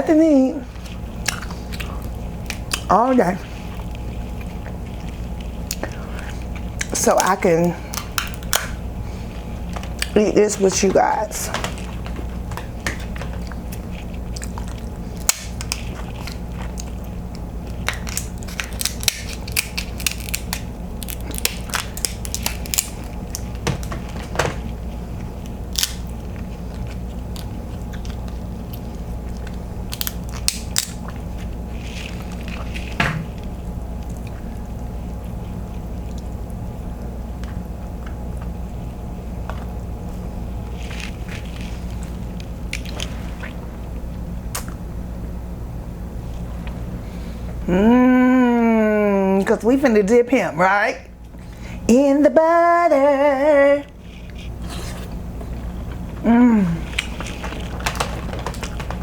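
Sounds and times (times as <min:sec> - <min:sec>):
steady low hum: 0:00.0 - 0:59.0
chewing: 0:00.7 - 0:07.0, 0:11.6 - 0:23.6, 0:24.6 - 0:38.8, 0:39.5 - 0:44.8, 0:53.8 - 0:56.2, 0:56.8 - 0:59.0
crab shells cracking: 0:01.1 - 0:02.9, 0:03.9 - 0:08.9, 0:11.6 - 0:24.7, 0:25.4 - 0:34.4, 0:56.8 - 0:59.0.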